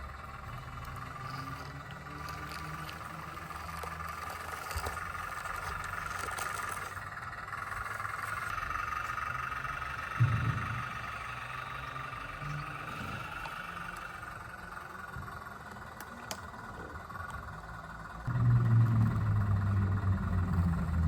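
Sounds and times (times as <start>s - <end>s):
small electric motor whining: 0.0s - 21.0s
low thump: 10.2s - 11.0s.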